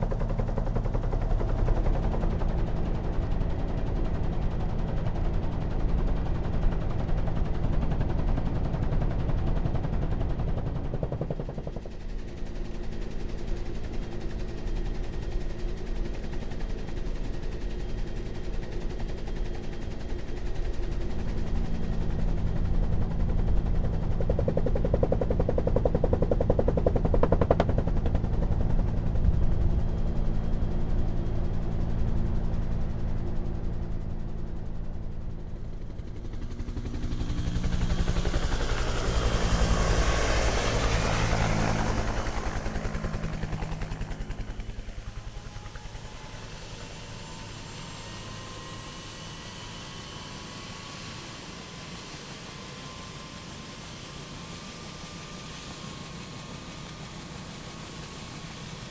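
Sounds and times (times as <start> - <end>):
helicopter rotor thumping: 8.0 - 12.2, 20.7 - 30.3.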